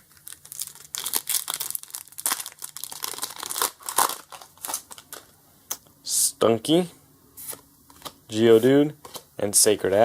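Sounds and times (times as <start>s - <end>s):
foil wrapper crinkling and tearing: 0.0s - 5.3s.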